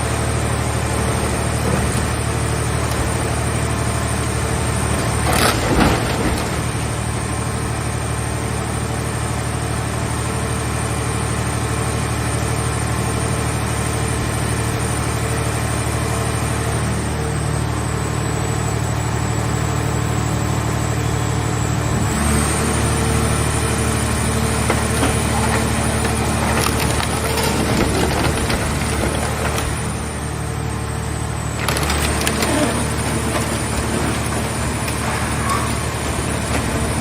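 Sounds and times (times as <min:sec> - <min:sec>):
baler engine and machinery: 0:00.0 - 0:37.0.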